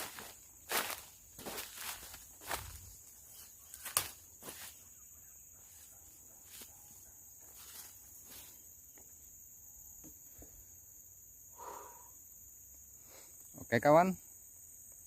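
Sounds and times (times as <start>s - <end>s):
footsteps through brush: 0.0s - 8.6s
insects chirring: 0.0s - 15.0s.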